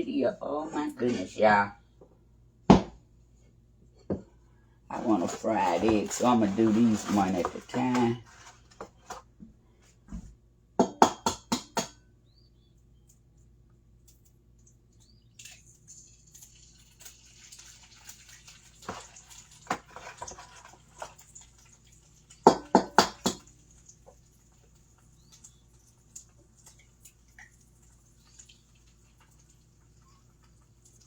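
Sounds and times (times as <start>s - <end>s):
frying pan sizzle: 4.9s - 9.2s, 15.8s - 31.0s
kitchen utensils clinking: 4.9s - 9.2s.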